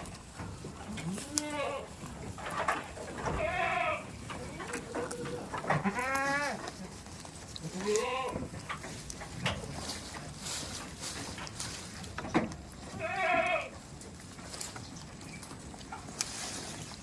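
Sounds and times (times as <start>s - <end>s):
goats bleating: 0.9s - 2.0s, 3.2s - 7.0s, 7.6s - 8.5s, 12.9s - 13.8s.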